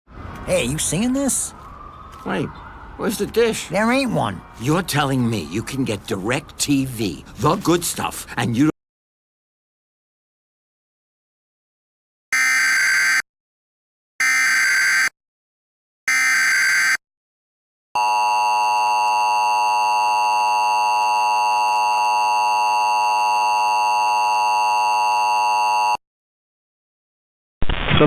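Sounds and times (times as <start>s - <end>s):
two-tone alarm signal: 12.4s - 13.2s, 14.2s - 15.1s, 16.1s - 17.0s, 18.0s - 26.0s.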